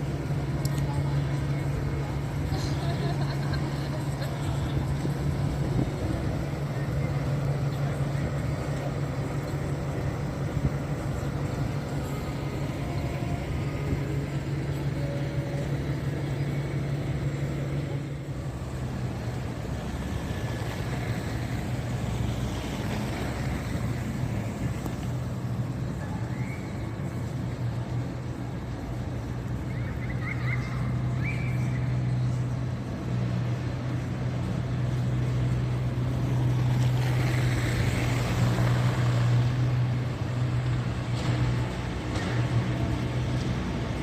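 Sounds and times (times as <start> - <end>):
city street traffic: 0.0 - 44.0.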